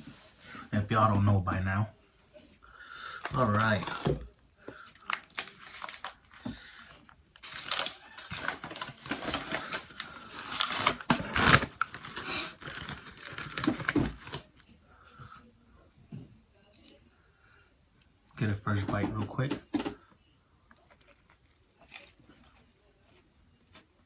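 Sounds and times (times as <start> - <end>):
paper wrapper crinkling and tearing: 4.8 - 14.7.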